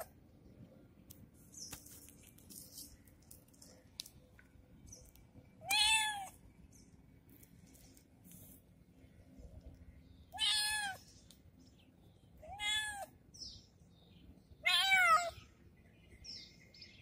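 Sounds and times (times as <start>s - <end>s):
kitten meowing: 5.7s - 6.3s, 10.4s - 11.0s, 12.4s - 13.1s, 14.6s - 15.3s.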